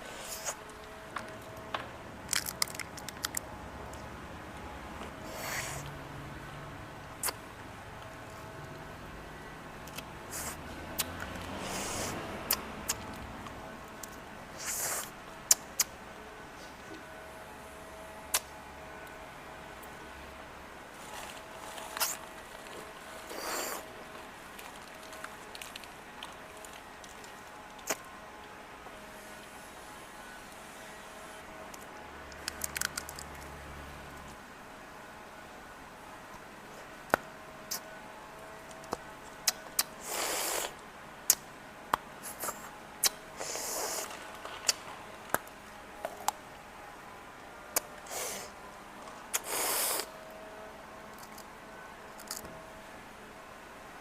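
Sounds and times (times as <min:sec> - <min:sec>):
candy chewing: 0:02.2 - 0:03.5, 0:24.5 - 0:28.1, 0:32.3 - 0:33.5
chewing hard candy: 0:02.3 - 0:03.4
crackly rustles: 0:20.9 - 0:28.6, 0:43.4 - 0:46.5.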